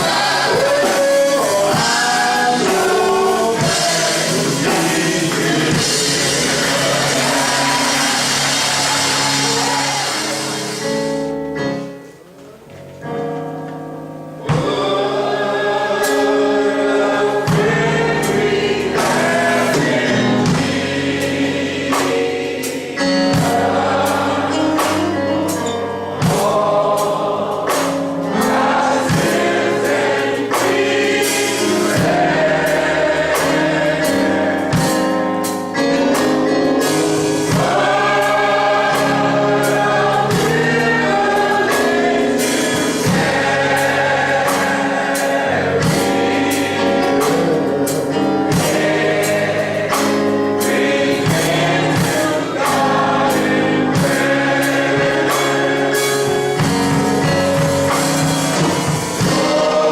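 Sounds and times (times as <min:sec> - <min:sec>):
steady beat: 0:00.0 - 0:11.5
gospel choir singing: 0:00.0 - 0:12.3, 0:14.3 - 0:59.9.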